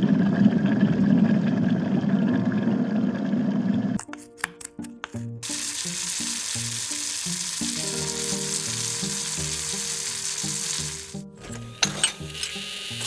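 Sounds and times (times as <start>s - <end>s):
food sizzling in a pan: 5.4s - 13.0s.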